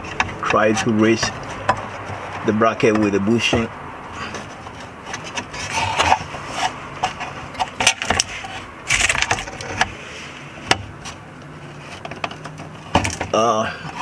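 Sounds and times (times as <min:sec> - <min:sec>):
short metal scrapes: 0:04.2 - 0:10.3.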